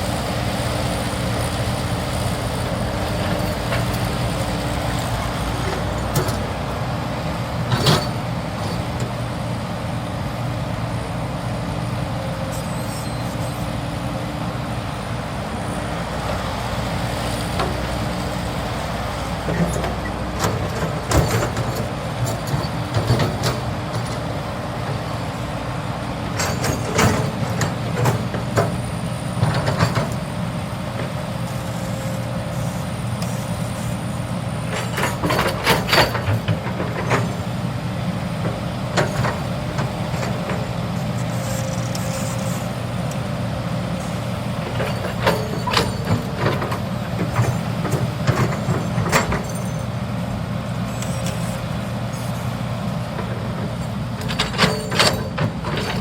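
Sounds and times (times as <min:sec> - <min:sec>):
excavator diesel engine running: 0:00.0 - 0:56.0.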